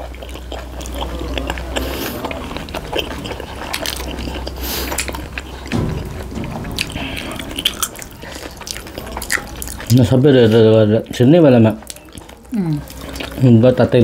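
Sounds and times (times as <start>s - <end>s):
close chewing with wet mouth clicks: 0.0s - 5.7s, 11.5s - 13.9s.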